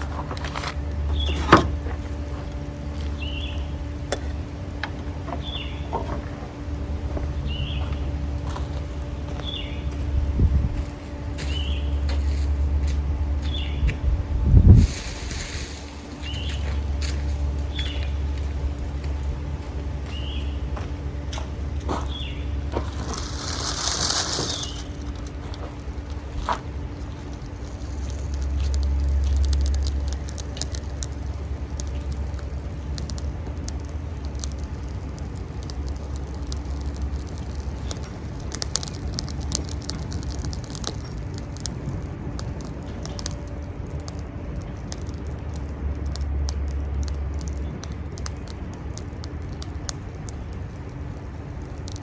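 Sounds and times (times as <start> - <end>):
low rumble: 6.7 - 52.0
fire crackling and popping: 14.6 - 19.2, 21.2 - 52.0.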